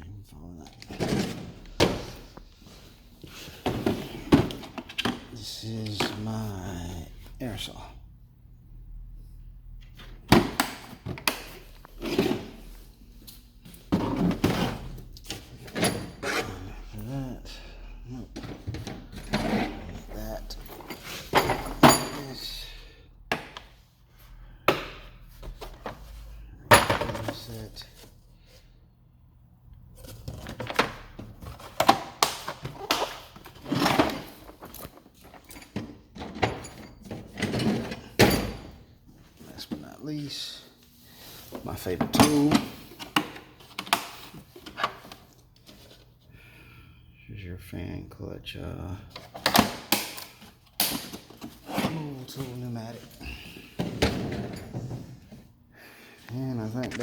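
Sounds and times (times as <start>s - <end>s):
metal drawers opening and shutting: 0.8s - 2.4s, 9.8s - 12.7s, 13.7s - 16.9s, 18.3s - 22.6s, 26.7s - 27.7s, 30.0s - 39.0s, 41.8s - 45.2s, 49.2s - 55.3s
tools clattering: 10.0s - 16.9s, 18.3s - 22.7s, 30.0s - 38.8s.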